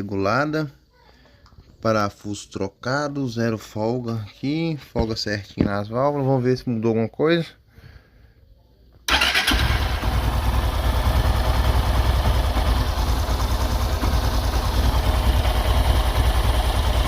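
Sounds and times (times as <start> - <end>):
motorcycle engine starting and idling: 9.1 - 17.0.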